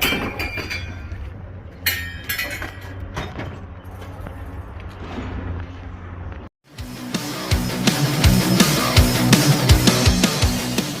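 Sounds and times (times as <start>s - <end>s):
truck engine rumbling: 0.0s - 6.5s.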